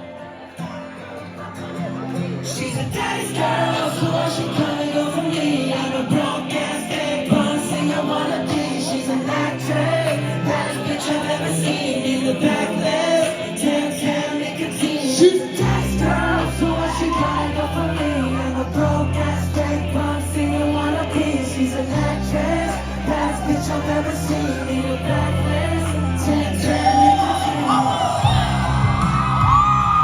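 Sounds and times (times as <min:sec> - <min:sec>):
music with singing: 0:00.0 - 0:30.0
deep bass line: 0:15.6 - 0:30.0.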